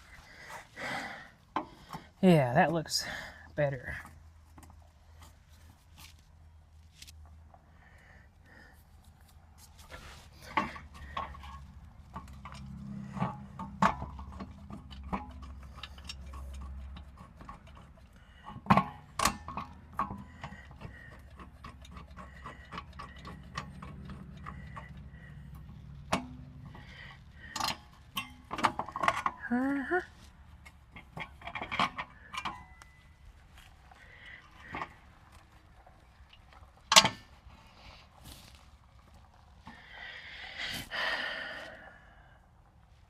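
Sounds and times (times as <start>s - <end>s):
hand tools clicking and knocking: 9.7s - 37.7s.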